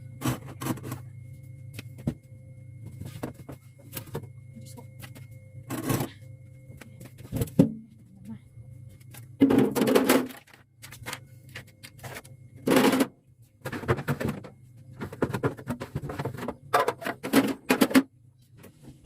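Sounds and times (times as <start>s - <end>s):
steady low hum: 0.0s - 19.0s
items clattering and scraping: 0.1s - 8.0s, 8.9s - 19.0s.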